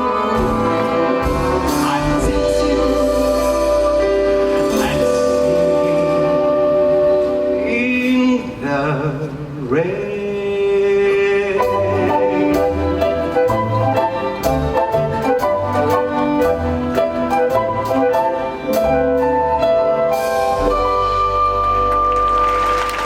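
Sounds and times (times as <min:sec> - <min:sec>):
plucked bass notes: 0:00.0 - 0:07.7
orchestra playing: 0:00.0 - 0:08.5, 0:10.2 - 0:23.0
man singing long notes: 0:00.0 - 0:13.0.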